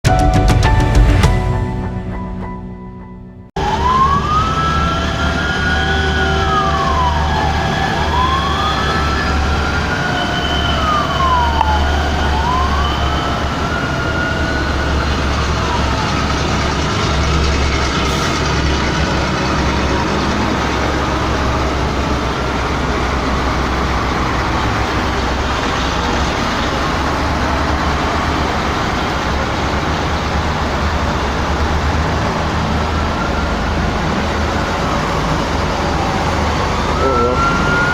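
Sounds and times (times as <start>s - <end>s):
emergency sirens wailing: 3.6s - 37.9s
low engine rumble: 10.8s - 37.9s.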